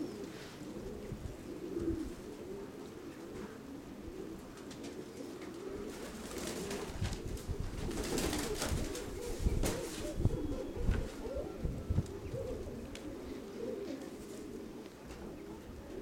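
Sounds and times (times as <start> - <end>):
pigeons cooing: 0.0 - 16.0
wind rumbling on microphone: 0.9 - 2.3, 6.7 - 13.4.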